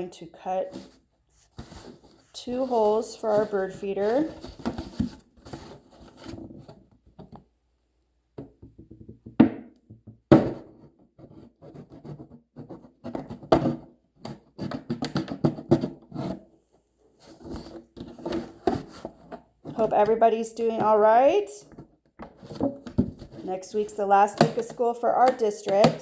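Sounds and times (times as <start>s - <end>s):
plastic jug being handled: 0.3s - 7.5s, 17.2s - 26.0s.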